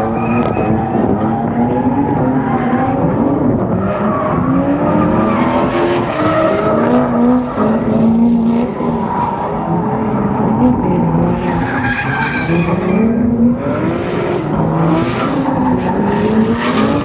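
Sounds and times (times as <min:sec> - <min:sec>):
car engine revving: 0:00.0 - 0:17.0
tyres squealing: 0:10.6 - 0:17.0.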